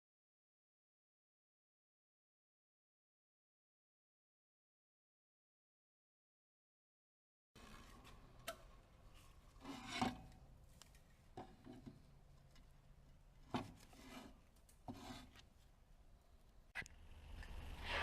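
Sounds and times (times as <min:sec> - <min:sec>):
faint scraping strokes: 0:09.1 - 0:10.4, 0:13.6 - 0:15.5, 0:17.4 - 0:18.0.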